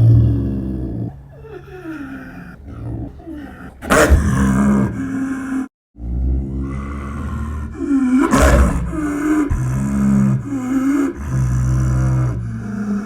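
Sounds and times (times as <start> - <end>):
snow leopard growling: 0.0 - 13.0
snow leopard calls: 1.0 - 5.6.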